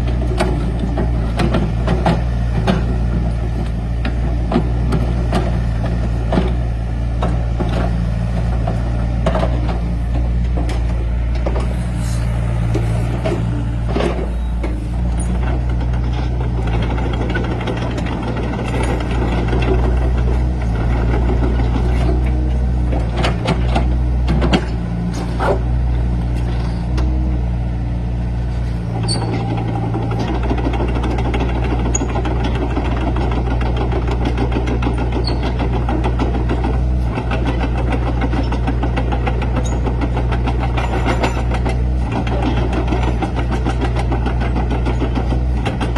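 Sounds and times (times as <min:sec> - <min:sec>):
excavator diesel engine: 0:00.0 - 0:45.9.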